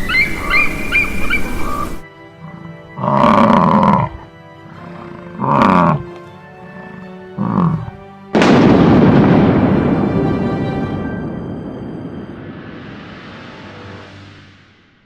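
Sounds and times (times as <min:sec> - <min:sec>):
background music: 0:00.0 - 0:15.0
large animal roaring: 0:02.4 - 0:08.0
loud crash: 0:08.4 - 0:15.0.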